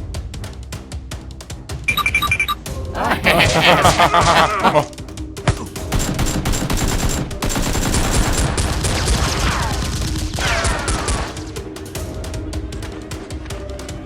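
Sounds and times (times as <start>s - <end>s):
rapid toy gunfire: 5.9s - 9.7s.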